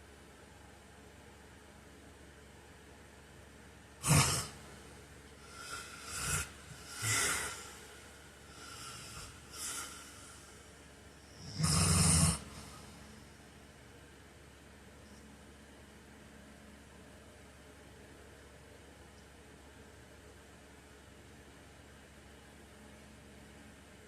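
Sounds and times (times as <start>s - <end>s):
man snoring: 4.0s - 4.7s, 5.4s - 10.7s, 11.3s - 13.0s
sharp snort: 4.0s - 4.7s, 5.4s - 10.6s, 11.4s - 13.0s.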